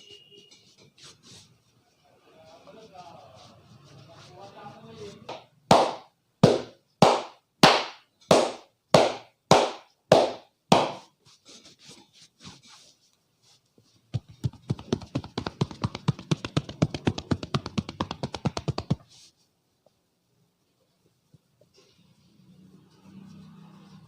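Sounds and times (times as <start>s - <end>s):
light hand taps: 14.1s - 19.0s.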